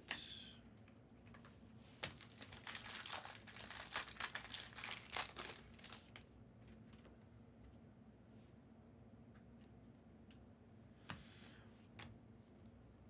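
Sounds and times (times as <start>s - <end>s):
plastic wrapper crinkling: 2.0s - 6.2s.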